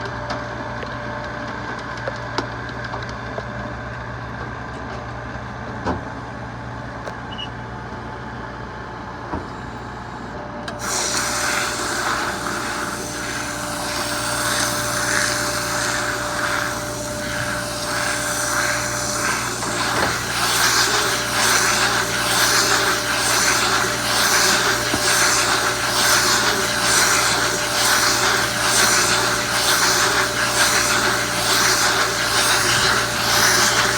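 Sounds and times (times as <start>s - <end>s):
baler electric hum: 6.9s - 33.9s
pulsing hissing rushing noise: 10.8s - 33.9s.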